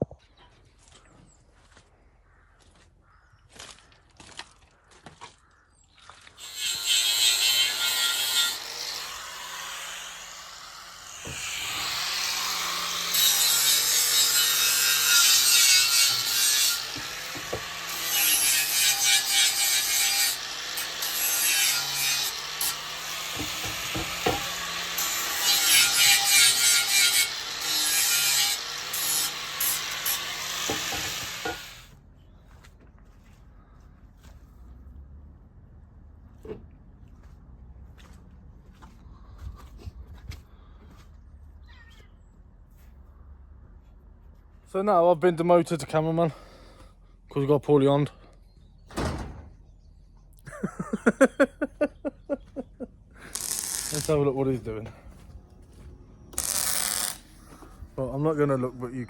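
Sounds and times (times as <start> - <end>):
angle grinder cutting metal: 6.4 - 31.9, 53.2 - 54.3, 56.4 - 57.3.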